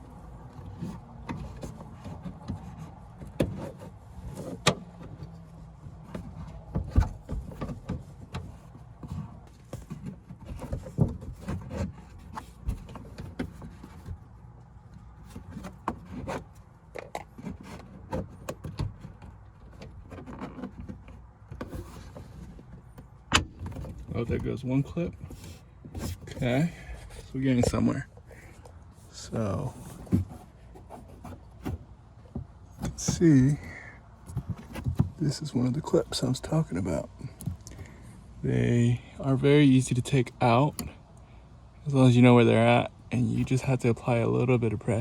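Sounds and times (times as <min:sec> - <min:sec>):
plastic trim creaking and knocking: 0:00.4 - 0:14.3, 0:15.0 - 0:28.8, 0:29.5 - 0:36.2.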